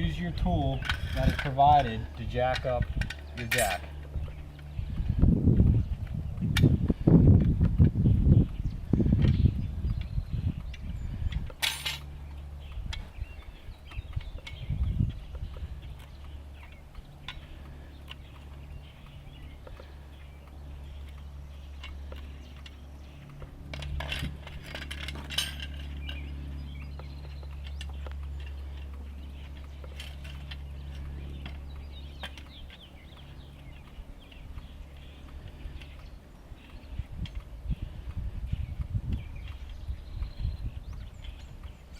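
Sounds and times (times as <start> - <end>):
steady low hum: 0.0 - 41.9
small metallic clicks and clinks: 9.2 - 38.2.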